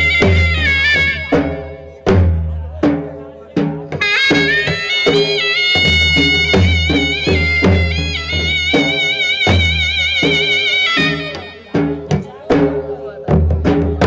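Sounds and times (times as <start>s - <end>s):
reedy wind instrument melody: 0.0s - 2.0s, 3.9s - 12.3s
low drum beats: 0.0s - 14.0s.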